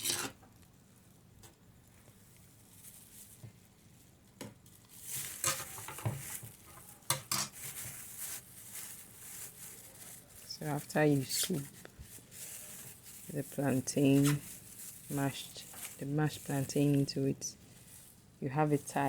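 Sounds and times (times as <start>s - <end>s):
bag rustling: 4.8s - 19.0s.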